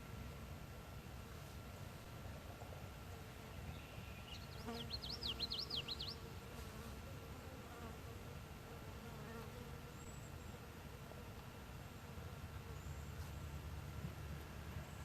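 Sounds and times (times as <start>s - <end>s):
insect buzzing: 3.2s - 10.6s
bird whistled song: 3.7s - 6.2s
low outdoor rumble: 10.0s - 15.0s.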